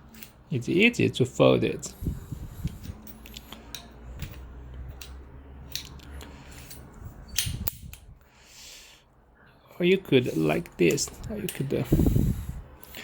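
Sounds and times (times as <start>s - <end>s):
low steady hum: 0.0s - 13.0s.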